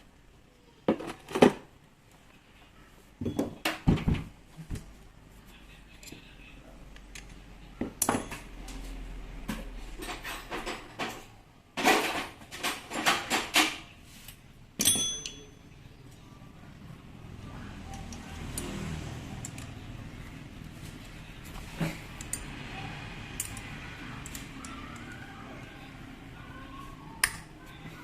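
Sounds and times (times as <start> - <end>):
metal tools clinking and knocking: 7.1 - 8.9, 14.8 - 15.8, 17.9 - 19.9, 21.7 - 22.6, 23.2 - 25.2
sharp metallic clink: 14.8 - 15.6.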